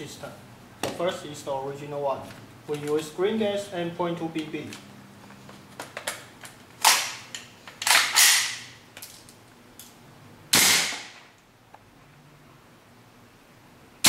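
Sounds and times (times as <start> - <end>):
airsoft rifle shots: 7.9 - 8.6, 10.5 - 11.2.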